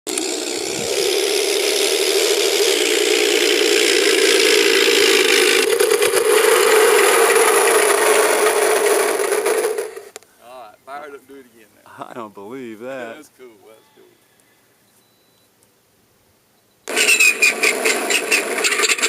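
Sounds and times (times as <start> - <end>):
model airplane engine drone: 0.1 - 10.2, 16.9 - 19.0.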